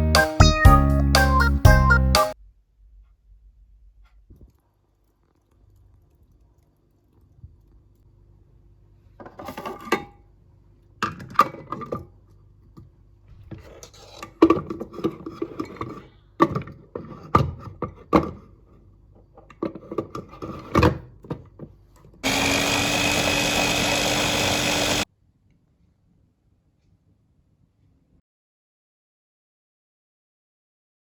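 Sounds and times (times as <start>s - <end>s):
knocks and clatters of objects: 11.0s - 18.6s
small electric appliance whirring: 22.2s - 25.1s.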